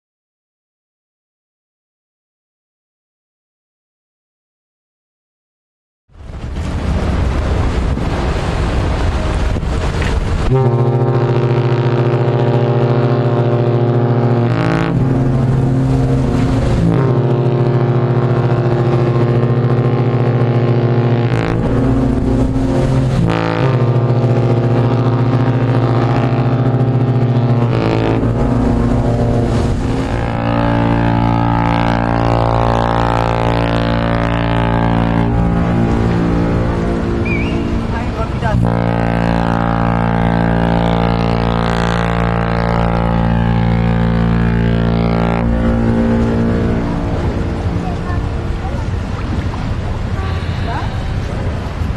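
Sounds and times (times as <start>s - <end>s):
loud rushing rumble: 6.2s - 10.5s, 26.5s - 38.6s, 45.4s - 51.9s
deep ship horn blast: 7.6s - 51.9s.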